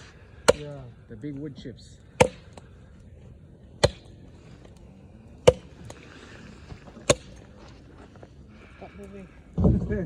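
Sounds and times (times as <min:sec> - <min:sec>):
axe chopping wooden log: 0:00.4 - 0:00.8, 0:02.2 - 0:02.7, 0:03.8 - 0:04.1, 0:05.4 - 0:06.0, 0:07.0 - 0:07.4.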